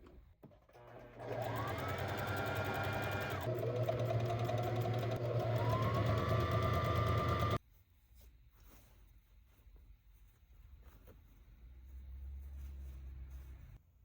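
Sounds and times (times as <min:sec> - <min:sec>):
electric sewing machine stitching: 0:00.6 - 0:07.6.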